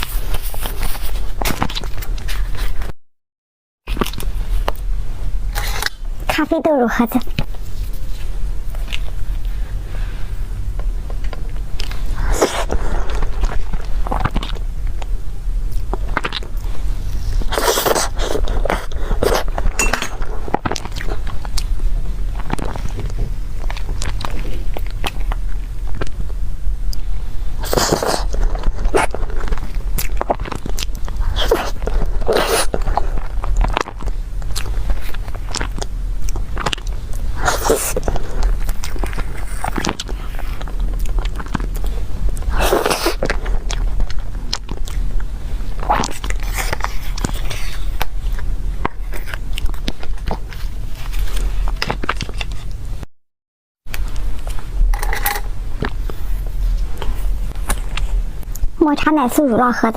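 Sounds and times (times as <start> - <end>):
soft chewing: 27.7 - 52.8.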